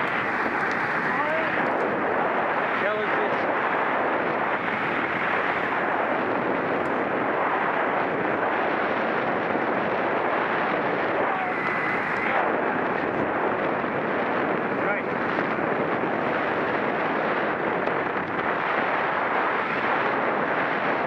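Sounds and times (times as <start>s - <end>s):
wind rushing on microphone: 0.0s - 21.0s.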